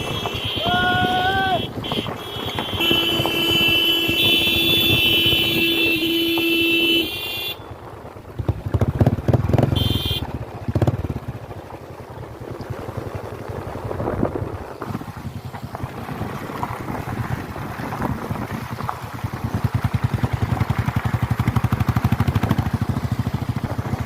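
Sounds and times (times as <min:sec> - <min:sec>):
motorcycle horn: 0:00.0 - 0:07.8, 0:09.6 - 0:10.4
motorcycle engine revving: 0:08.2 - 0:24.0.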